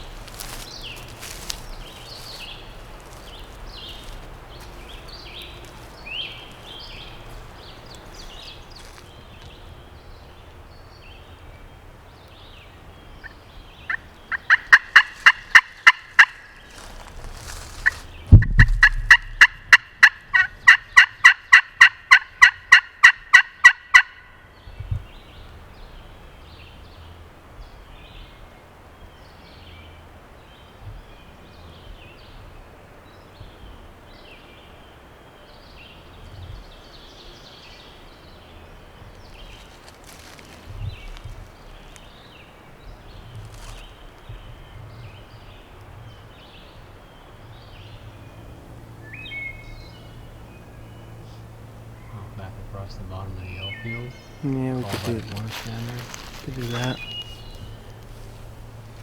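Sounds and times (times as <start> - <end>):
faint songbird chirps: 0.0 - 19.4, 24.2 - 59.0
turkey call yelping: 13.9 - 16.5, 18.8 - 24.3
loud thump: 18.3 - 19.2.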